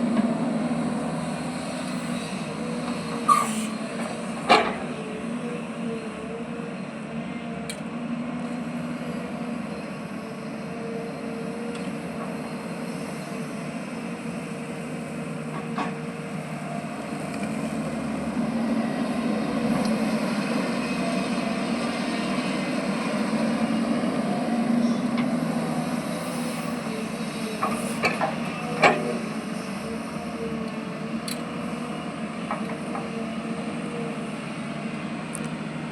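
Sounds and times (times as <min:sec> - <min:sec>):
diesel engine of earthmoving machine: 0:00.0 - 0:35.9.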